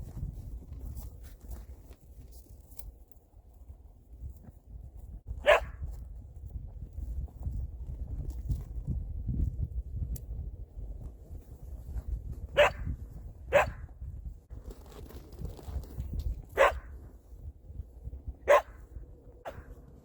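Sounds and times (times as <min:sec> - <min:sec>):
dog barking: 0:05.4 - 0:05.8, 0:12.6 - 0:12.9, 0:13.5 - 0:13.9, 0:16.6 - 0:16.9, 0:18.5 - 0:18.8, 0:19.4 - 0:19.7.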